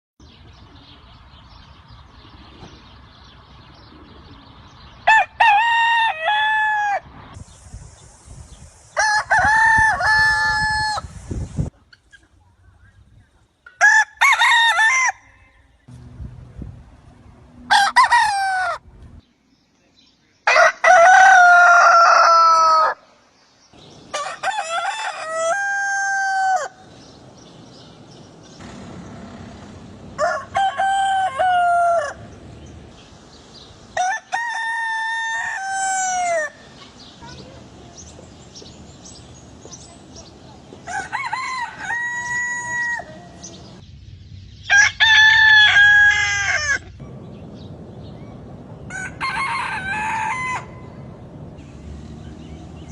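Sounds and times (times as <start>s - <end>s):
roosters crowing: 5.0s - 7.2s, 8.9s - 11.2s, 13.8s - 15.8s, 17.5s - 19.2s, 20.4s - 23.1s, 23.8s - 32.9s, 33.5s - 36.8s, 40.8s - 43.8s, 44.6s - 47.7s, 48.4s - 52.9s.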